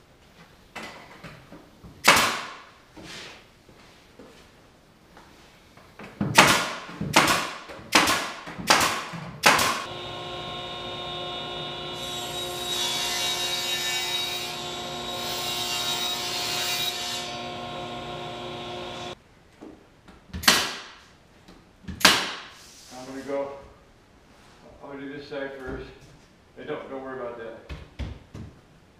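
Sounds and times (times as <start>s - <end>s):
power tool cutting into wood: 9.8s - 19.2s
power tool motor running: 9.9s - 13.6s, 14.4s - 16.3s, 17.2s - 19.2s.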